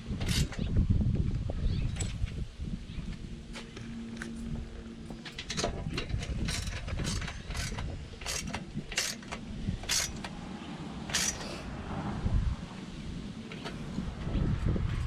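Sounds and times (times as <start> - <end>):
ratchet wrench clicking: 5.5 - 10.3, 11.1 - 11.5.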